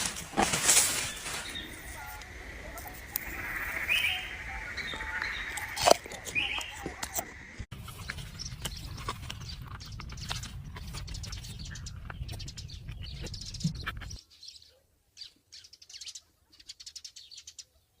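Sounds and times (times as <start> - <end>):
steady low rumble: 0.0 - 14.2
small birds chirping: 0.7 - 18.0.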